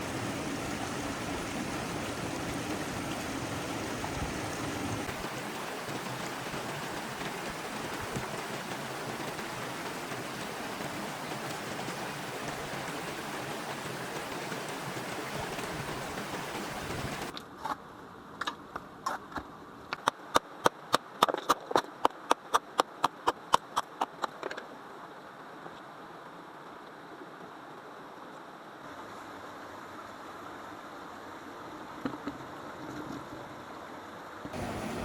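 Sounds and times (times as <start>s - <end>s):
rushing water noise: 0.0s - 17.4s, 34.5s - 35.0s.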